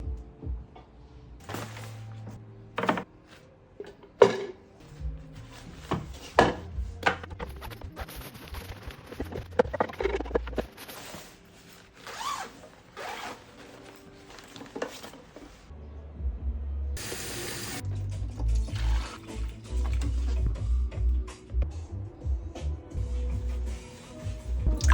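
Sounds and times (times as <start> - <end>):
background music with bass line: 0.0 - 2.4, 4.8 - 11.2, 15.7 - 24.9
objects rubbing and scraping: 5.4 - 15.7.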